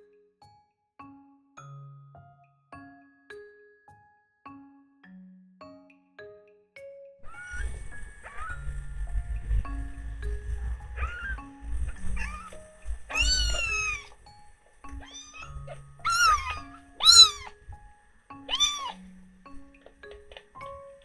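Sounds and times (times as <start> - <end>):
gentle background tune: 0.0 - 21.0
kitten meowing: 10.8 - 14.2, 14.9 - 17.6, 18.4 - 19.1.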